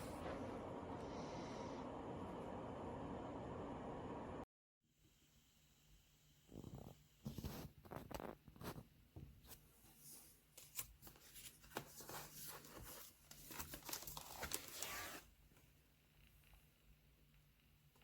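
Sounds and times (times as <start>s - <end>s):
crinkly rustling: 9.9s - 15.4s.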